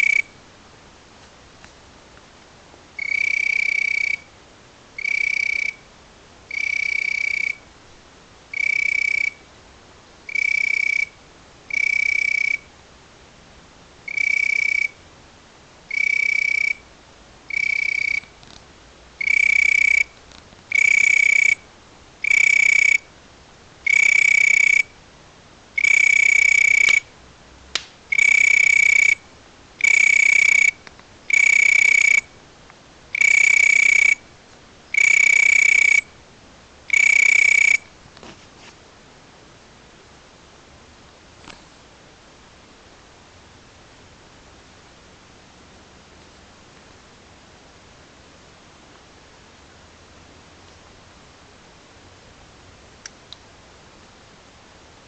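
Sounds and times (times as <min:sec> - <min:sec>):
insect whistle-like note: 0:00.0 - 0:00.4, 0:03.0 - 0:04.3, 0:06.5 - 0:07.6, 0:08.5 - 0:09.4, 0:10.3 - 0:12.7, 0:14.1 - 0:15.0, 0:15.9 - 0:16.9, 0:17.5 - 0:18.3, 0:19.2 - 0:20.1, 0:20.7 - 0:21.6, 0:22.2 - 0:23.1, 0:23.9 - 0:24.9, 0:25.8 - 0:27.1, 0:28.1 - 0:29.2, 0:29.8 - 0:32.3, 0:33.2 - 0:34.2, 0:34.9 - 0:36.1, 0:36.9 - 0:37.9.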